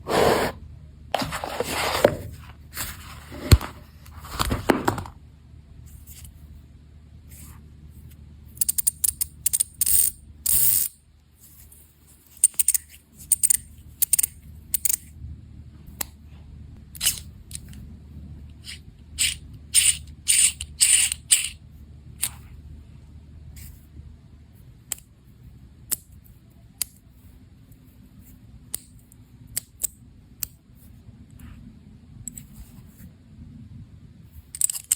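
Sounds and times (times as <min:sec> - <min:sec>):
fidget spinner clicking and ratcheting: 0:18.6 - 0:21.6.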